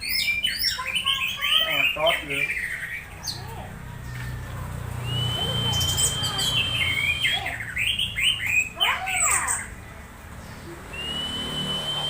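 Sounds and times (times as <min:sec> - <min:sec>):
bird long high whistle: 0:05.0 - 0:07.3, 0:10.9 - 0:12.0
bird squawky whistled notes: 0:05.0 - 0:09.7, 0:10.9 - 0:12.0.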